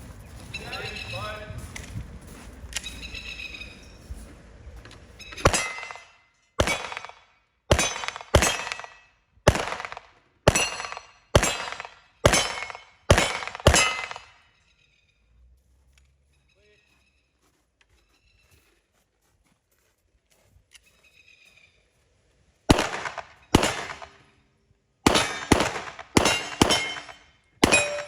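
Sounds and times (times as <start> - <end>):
pistol shots with echo: 5.4 - 14.4, 22.7 - 24.3, 25.0 - 28.0.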